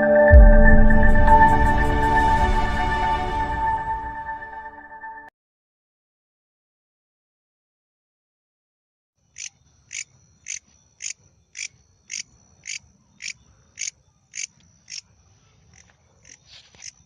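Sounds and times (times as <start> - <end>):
insect chirping: 9.2 - 17.0.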